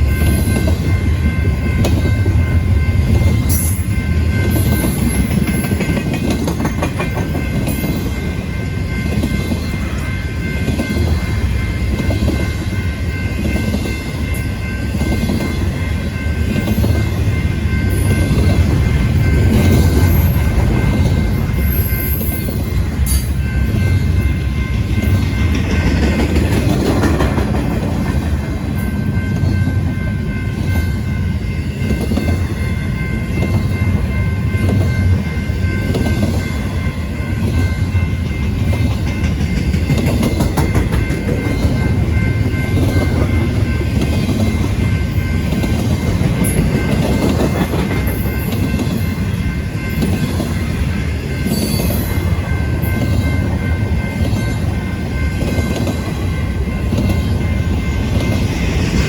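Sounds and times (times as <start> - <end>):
train rumbling past: 0.0 - 59.0
wheels clacking over rail joints: 4.5 - 8.2, 25.0 - 29.5, 38.5 - 49.0.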